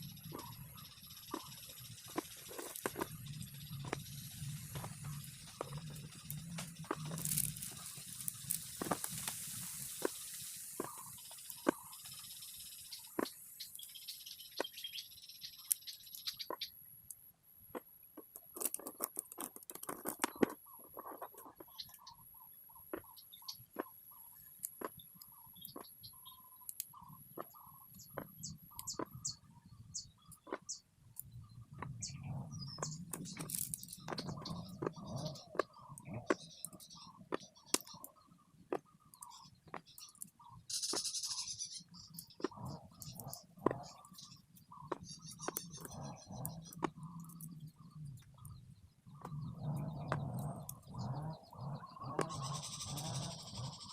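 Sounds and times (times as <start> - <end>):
birds chirping: 0.0 - 16.9, 18.7 - 53.9
magnetic balls clicking together: 17.8 - 22.2, 30.0 - 48.6.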